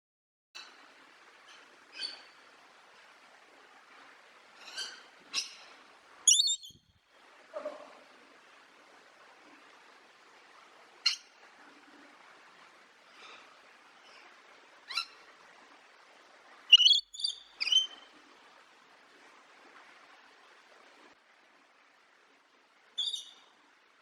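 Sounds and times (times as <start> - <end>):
parrot squawking: 6.3 - 6.7, 16.7 - 18.0.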